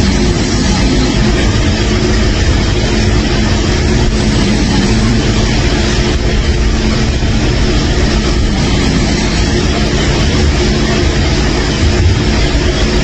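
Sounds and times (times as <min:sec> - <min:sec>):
loud snoring: 0:00.0 - 0:01.7, 0:03.9 - 0:05.9, 0:08.0 - 0:11.1.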